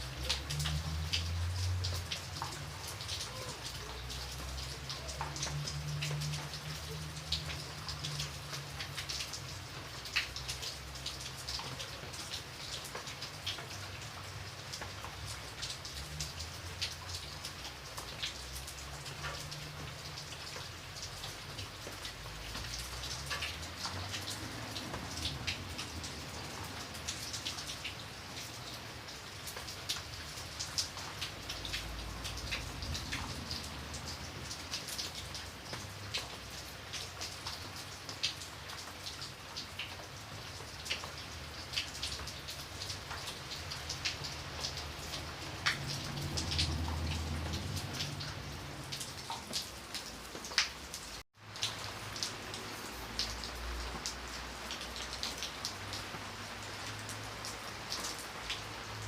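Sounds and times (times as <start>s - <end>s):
rain drops ticking on hard surface: 0.0s - 59.0s.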